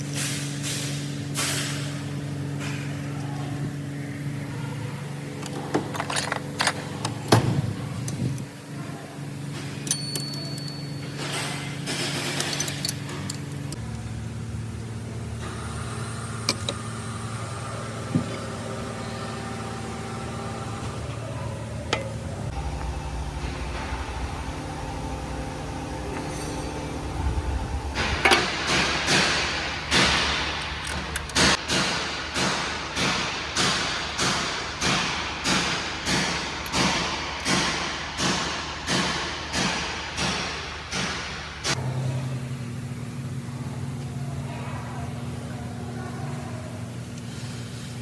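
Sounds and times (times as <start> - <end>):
car engine running: 11.9 - 37.6, 40.9 - 48.0
sharp clicks and knocks: 21.9 - 41.8.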